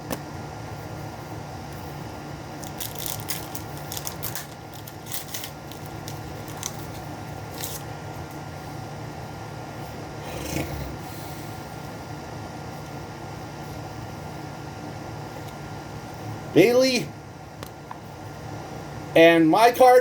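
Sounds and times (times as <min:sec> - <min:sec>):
low room hum: 0:00.0 - 0:20.0
cards rustling and clicking: 0:02.6 - 0:07.9.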